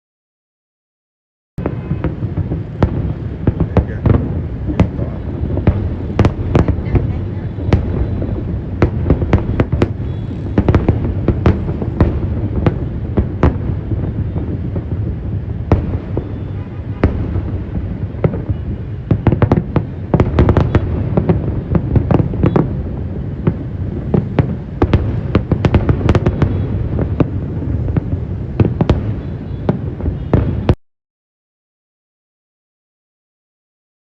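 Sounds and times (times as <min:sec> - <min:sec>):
low rumble of firework bursts: 0:01.6 - 0:30.8
sharp firework cracks: 0:01.6 - 0:30.8.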